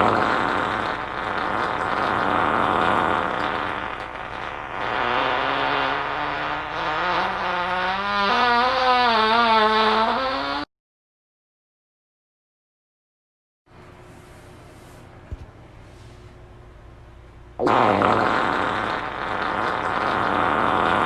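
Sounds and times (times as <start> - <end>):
long fart: 0.0 - 10.7, 17.6 - 21.0.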